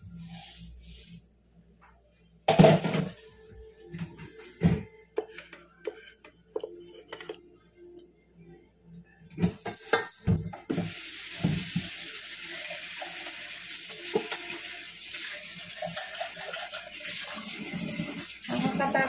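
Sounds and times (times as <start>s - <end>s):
tap running into sink: 9.9s - 12.0s.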